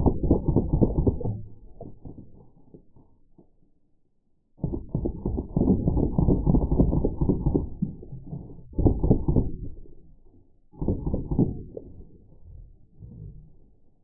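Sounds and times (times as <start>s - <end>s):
slowed bb gun firing: 0.0s - 2.4s, 4.6s - 8.0s.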